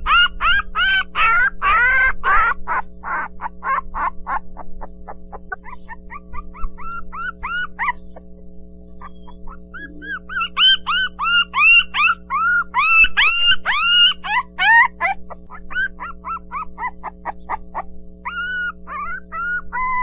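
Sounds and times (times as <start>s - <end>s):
puppy yelping: 0.0s - 20.0s
steady low hum: 0.0s - 20.0s.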